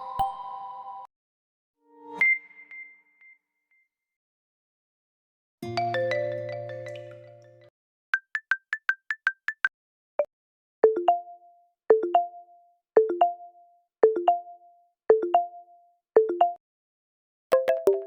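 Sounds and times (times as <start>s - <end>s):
phone ringtone marimba notes: 5.6s - 7.6s, 10.8s - 16.6s, 17.6s - 18.0s.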